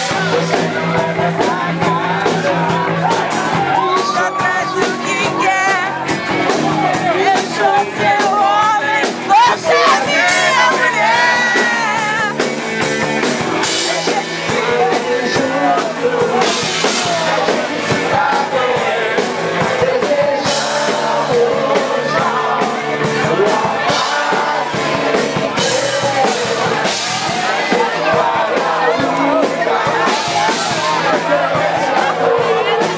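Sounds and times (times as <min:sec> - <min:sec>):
person singing: 0:00.0 - 0:06.0, 0:13.6 - 0:32.9
live rock band playing: 0:00.0 - 0:32.9.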